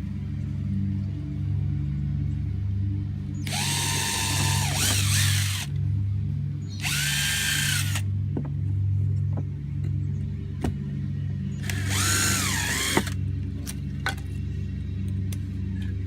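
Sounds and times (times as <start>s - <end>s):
steady low hum: 0.0s - 16.0s
power drill motor whine: 3.4s - 5.7s, 6.8s - 8.0s, 11.6s - 13.2s.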